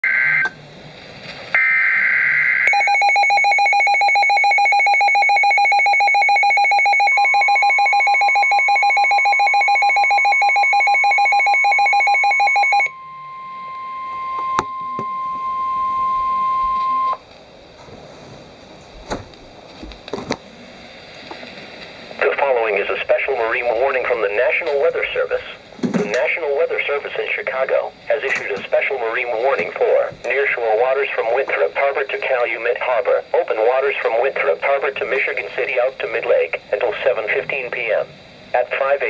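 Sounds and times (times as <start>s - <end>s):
steady warning alarm tone: 1.6s - 17.2s
rapid pulsing alarm beeps: 2.6s - 17.2s
low hiss: 20.0s - 39.0s.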